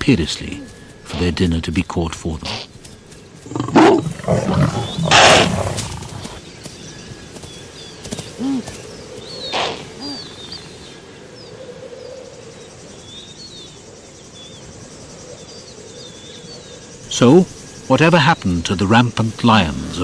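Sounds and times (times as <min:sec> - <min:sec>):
background hiss: 0:00.0 - 0:20.0
small birds chirping: 0:00.0 - 0:20.0
short low calls: 0:08.4 - 0:08.8, 0:09.4 - 0:10.6.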